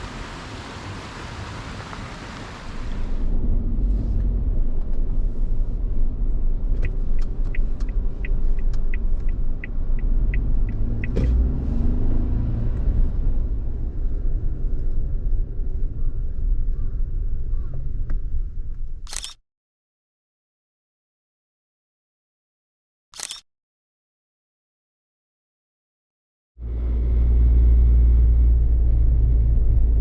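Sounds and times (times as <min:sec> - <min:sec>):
car engine and tyre rumble: 0:00.0 - 0:19.4, 0:26.6 - 0:30.0.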